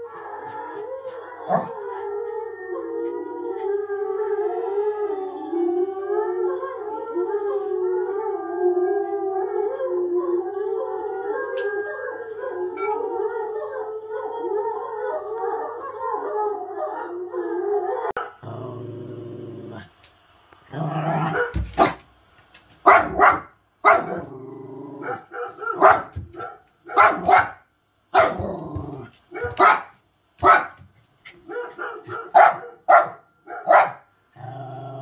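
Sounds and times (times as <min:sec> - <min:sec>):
dog barking: 0:01.5 - 0:01.7, 0:18.2 - 0:18.4, 0:21.3 - 0:22.0, 0:22.8 - 0:24.3, 0:25.0 - 0:28.6, 0:29.3 - 0:34.1.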